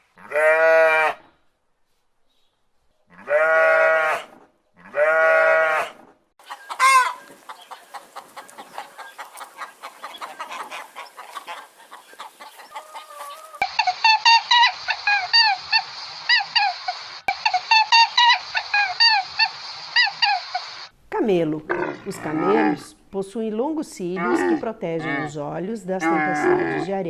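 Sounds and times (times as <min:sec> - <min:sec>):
animal bleating: 0:03.1 - 0:06.0, 0:24.2 - 0:25.3, 0:26.0 - 0:26.9
chickens clucking: 0:06.4 - 0:20.9
flock of fowl calling rapidly: 0:06.4 - 0:20.9.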